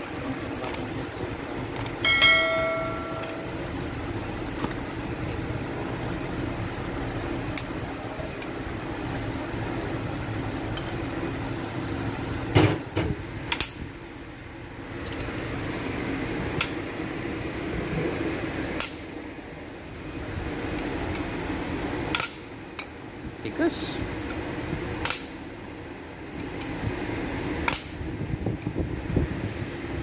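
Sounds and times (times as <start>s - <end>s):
machine hum: 0.0s - 27.7s
tools clinking on metal: 2.0s - 3.5s.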